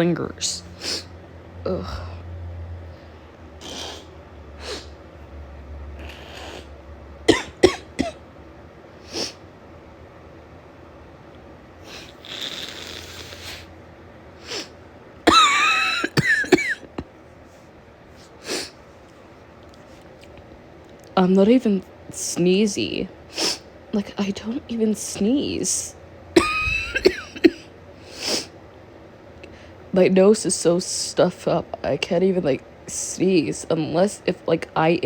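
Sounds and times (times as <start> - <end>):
woman coughing: 7.3 - 8.2, 15.3 - 17.1, 26.4 - 27.7
woman sniffling: 18.3 - 18.8, 26.4 - 28.5.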